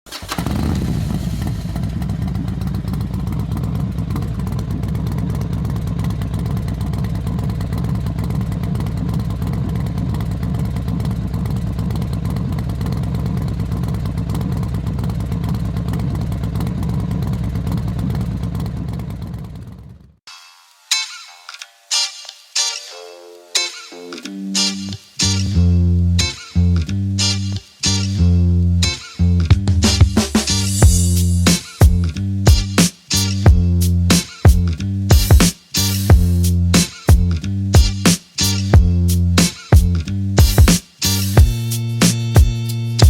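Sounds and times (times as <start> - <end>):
motorcycle engine running: 0.1 - 20.2, 29.4 - 42.8.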